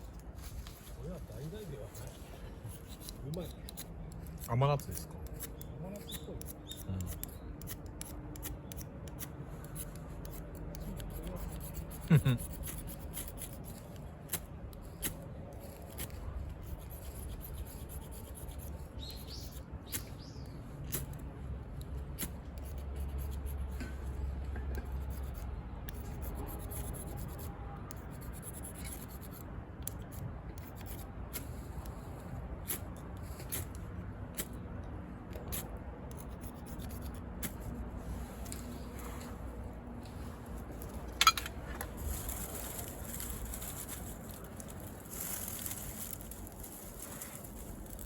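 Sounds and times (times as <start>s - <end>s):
scraping and rubbing handling sounds: 35.4s - 48.0s.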